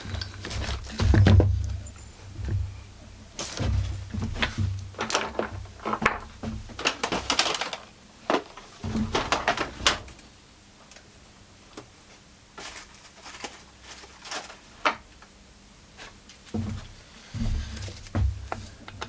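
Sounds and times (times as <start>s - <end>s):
tools clattering on a workbench: 3.4s - 10.2s, 12.6s - 15.1s.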